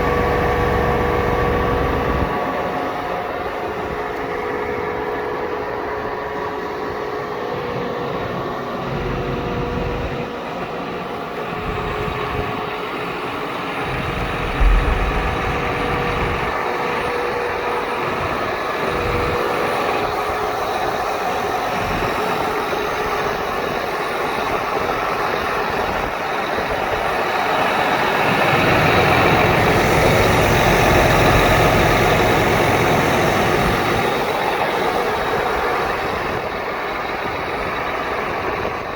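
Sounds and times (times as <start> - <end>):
tractor diesel engine running: 0.0 - 38.9
sharp thump: 14.4 - 16.6.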